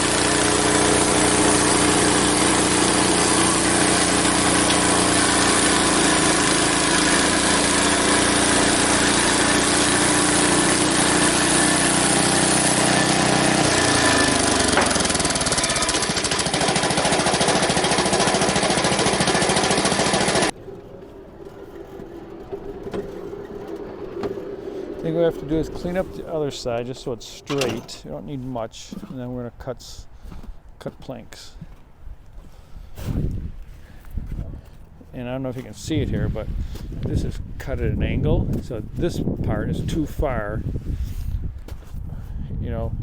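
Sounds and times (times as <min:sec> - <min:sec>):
band sawmill engine cutting log: 0:00.0 - 0:29.1.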